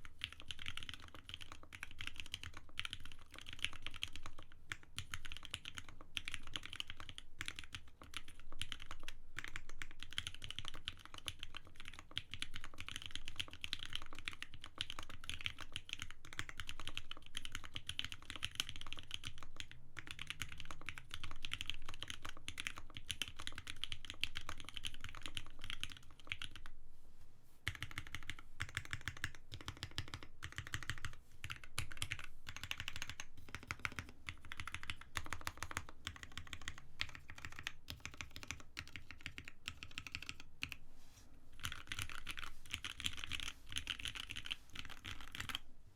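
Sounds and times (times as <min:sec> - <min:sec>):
fast typing on mechanical keyboard: 0:00.0 - 0:26.7, 0:27.7 - 0:40.8, 0:41.6 - 0:45.6.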